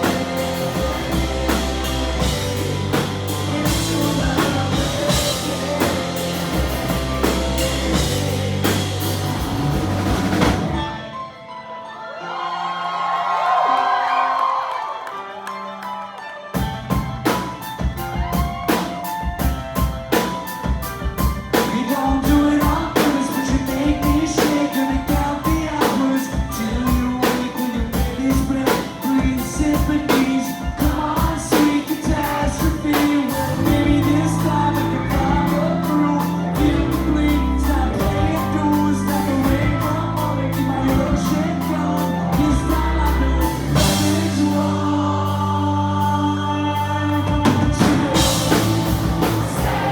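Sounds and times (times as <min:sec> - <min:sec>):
heavy bass: 0:00.0 - 0:11.0, 0:32.1 - 0:49.9
driving drum beat: 0:00.0 - 0:11.1, 0:16.6 - 0:49.9
live rock band with singing: 0:00.0 - 0:11.2, 0:16.5 - 0:49.9.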